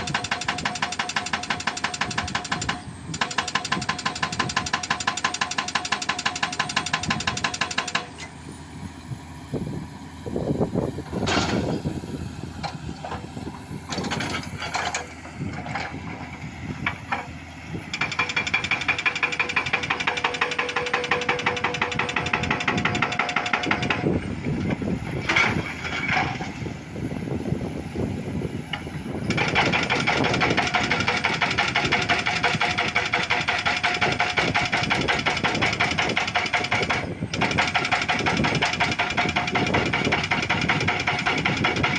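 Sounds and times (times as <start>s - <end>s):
hydraulic breaker hammering rock: 0.0s - 8.3s, 17.9s - 26.5s, 28.7s - 41.9s
knocks and clatter: 0.0s - 8.3s, 13.9s - 17.3s, 18.0s - 26.6s, 28.7s - 41.9s
excavator engine running: 0.0s - 41.9s.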